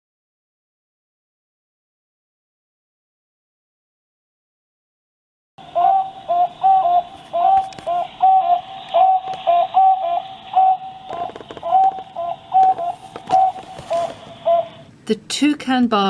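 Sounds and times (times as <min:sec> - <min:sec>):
birds hooting song: 0:05.6 - 0:14.9.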